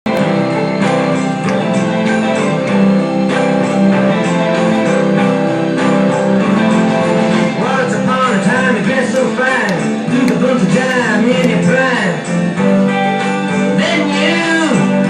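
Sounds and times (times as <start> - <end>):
strummed guitar music: 0.1 - 15.0
steady beat: 8.5 - 11.8.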